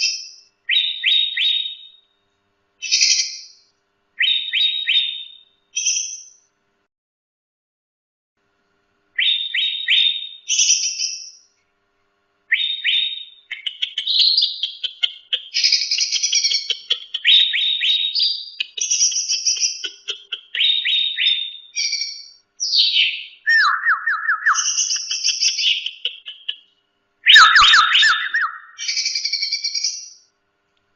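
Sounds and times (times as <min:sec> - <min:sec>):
songbird whistling and chattering: 0:00.0 - 0:02.0, 0:02.8 - 0:03.6, 0:04.2 - 0:06.4, 0:09.2 - 0:11.3, 0:12.5 - 0:26.6, 0:27.3 - 0:30.2.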